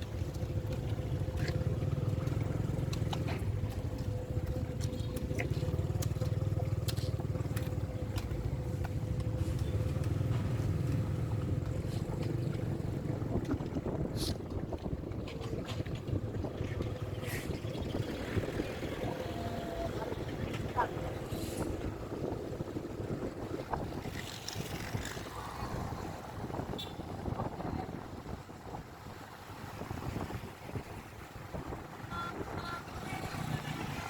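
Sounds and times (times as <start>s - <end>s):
constant hum: 0.0s - 21.3s
vehicle rumbling on the move: 0.0s - 34.0s.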